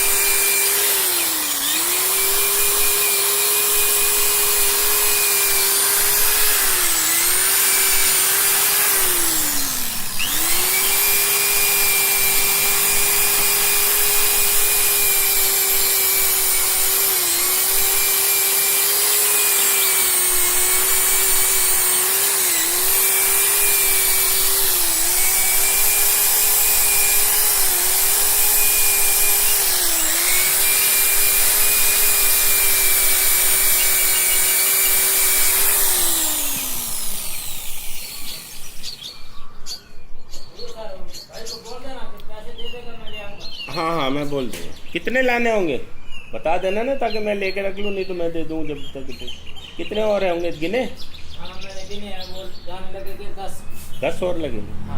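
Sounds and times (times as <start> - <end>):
power tool motor whining: 0.0 - 39.3.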